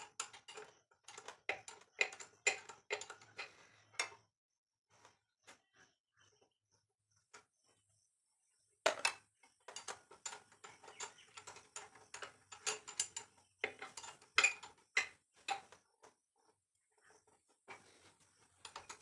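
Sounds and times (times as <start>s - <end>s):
metal tools clinking: 9.7s - 15.7s.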